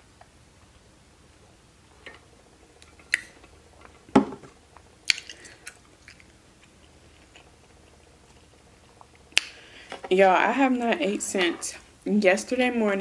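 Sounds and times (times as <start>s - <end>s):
wet squishy chewing: 5.0s - 9.8s.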